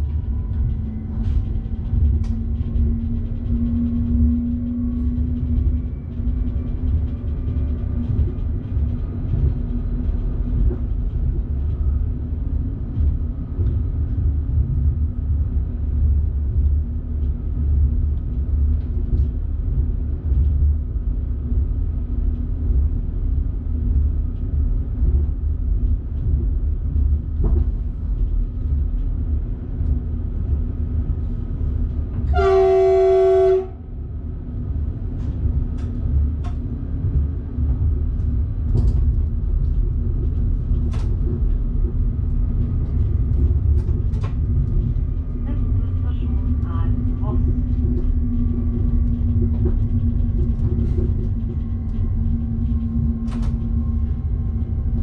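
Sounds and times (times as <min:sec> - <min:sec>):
electric train rumbling: 0:00.0 - 0:55.0
train horn blast: 0:32.3 - 0:33.9.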